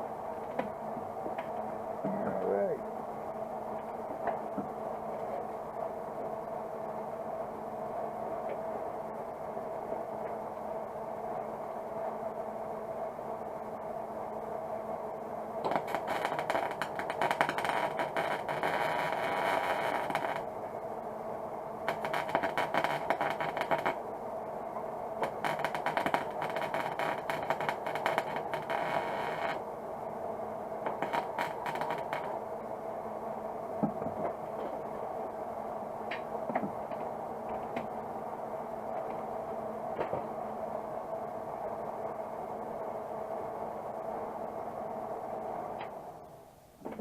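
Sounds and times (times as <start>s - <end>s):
steady hum: 0.0s - 47.0s
arc welder crackling: 15.6s - 20.8s, 21.8s - 32.5s.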